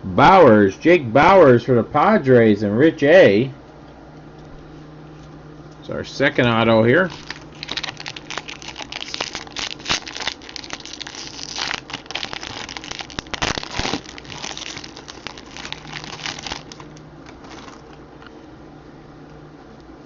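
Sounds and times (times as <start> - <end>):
foil wrapper crinkling and tearing: 7.1 - 18.0.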